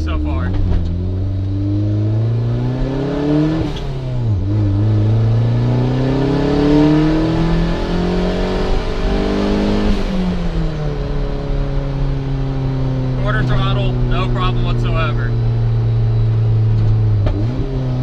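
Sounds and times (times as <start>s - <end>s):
car engine accelerating: 0.0s - 18.0s.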